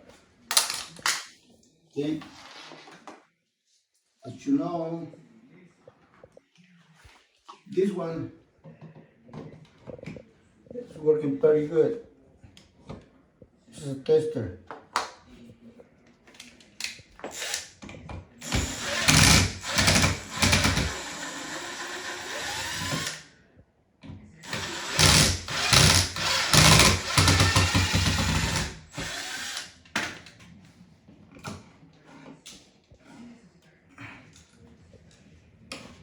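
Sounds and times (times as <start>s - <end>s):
electric drill-driver whine: 17.3s - 17.7s, 18.4s - 23.2s, 24.4s - 29.7s.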